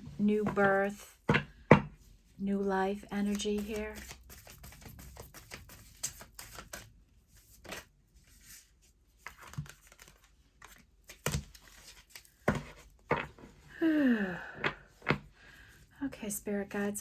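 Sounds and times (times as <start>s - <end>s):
cards being shuffled: 3.2s - 13.5s.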